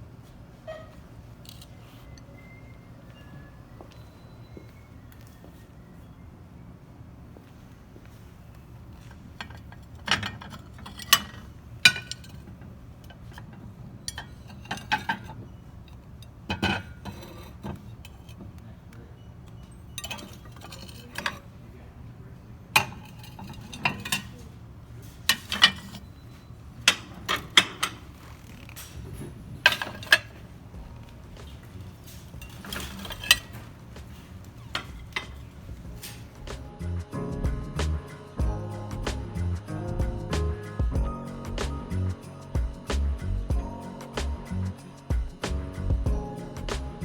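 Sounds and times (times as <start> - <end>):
low store hum: 0.0 - 47.0
glassware and dishes clinking: 9.0 - 21.6, 22.8 - 36.6.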